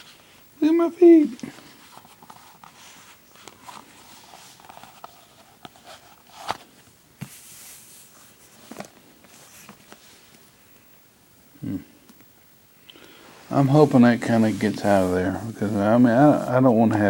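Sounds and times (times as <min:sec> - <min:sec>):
book pages being handled: 0:01.4 - 0:10.4
paper rustle: 0:01.4 - 0:10.4.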